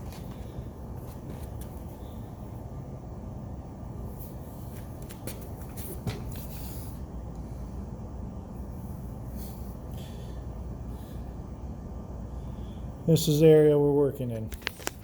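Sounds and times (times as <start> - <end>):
low background rumble: 0.0 - 13.1
light clicks and rustling: 14.5 - 15.0.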